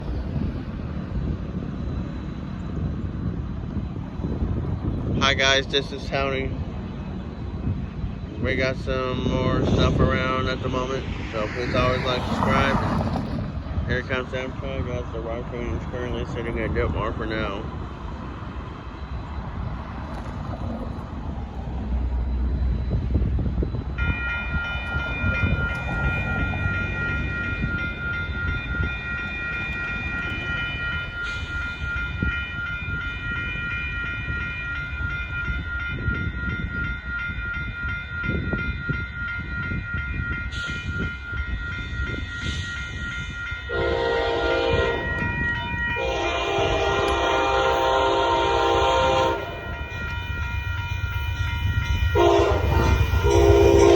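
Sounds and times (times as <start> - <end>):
low rumble of train: 0.0 - 53.9
train horn blowing: 43.6 - 53.9.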